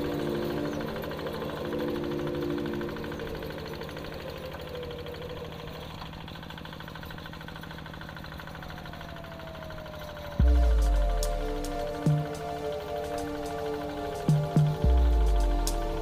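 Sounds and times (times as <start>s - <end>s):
music: 0.0s - 4.6s, 10.4s - 16.0s
tractor engine chugging: 0.0s - 16.0s.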